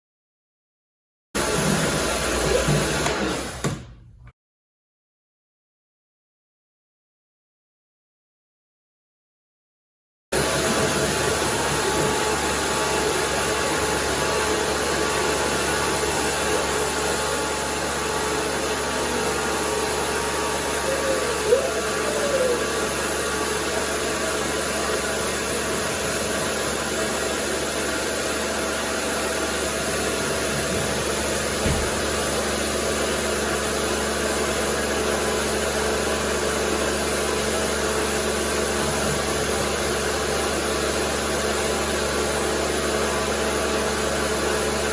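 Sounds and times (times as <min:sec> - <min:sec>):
pressure washer motor humming: 0:01.4 - 0:04.0, 0:10.4 - 0:44.9
brief knock: 0:31.6 - 0:32.1.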